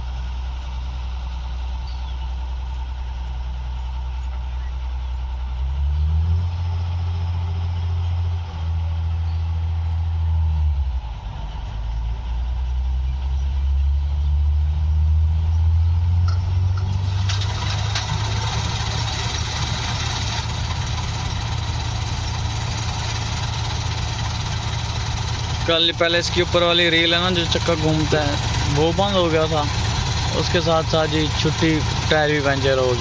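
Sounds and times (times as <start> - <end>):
heavy engine droning: 0.0 - 33.0.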